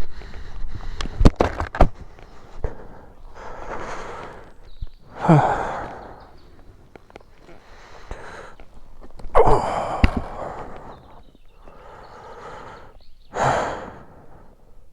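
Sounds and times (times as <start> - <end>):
soft breaths: 0.0 - 14.9
person sighing heavily: 2.6 - 6.6, 7.4 - 8.6, 9.2 - 14.5.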